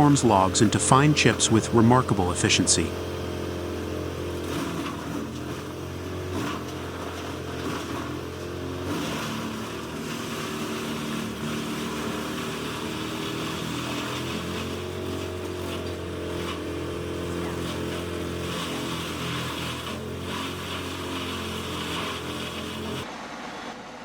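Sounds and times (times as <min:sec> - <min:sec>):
wood chipper engine: 0:00.0 - 0:24.0
wood cracking in chipper: 0:03.9 - 0:23.0.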